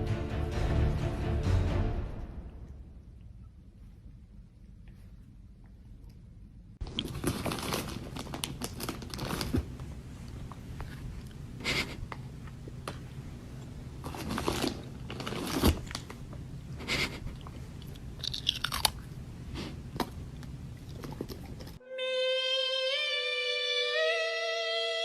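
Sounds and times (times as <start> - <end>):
cat chewing and crunching: 4.6 - 12.6, 13.5 - 21.8
pitched melody: 21.8 - 25.0.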